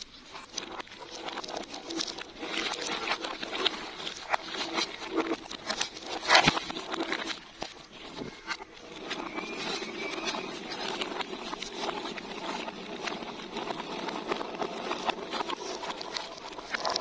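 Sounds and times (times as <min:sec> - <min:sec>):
marbles rolling and clattering: 0:00.0 - 0:17.0.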